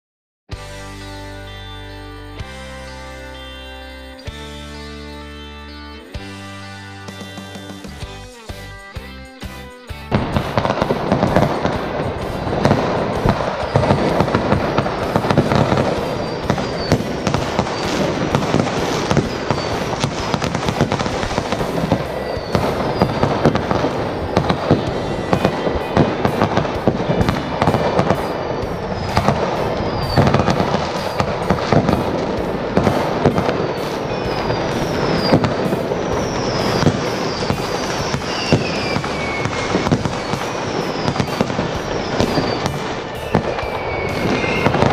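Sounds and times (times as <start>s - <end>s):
fireworks banging and crackling: 7.0s - 8.6s, 10.0s - 44.9s
falling firework whistles: 10.1s - 44.9s.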